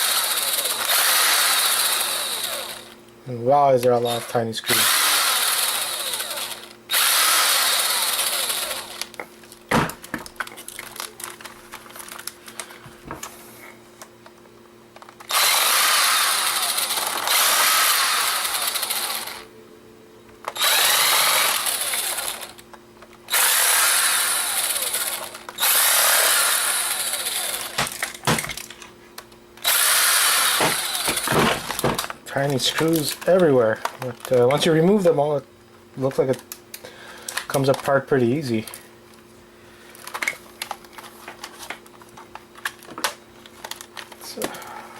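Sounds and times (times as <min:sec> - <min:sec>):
power screwdriver running: 0:00.0 - 0:03.0, 0:04.1 - 0:09.2, 0:15.2 - 0:19.5, 0:20.5 - 0:22.6, 0:23.3 - 0:28.1, 0:29.6 - 0:32.0.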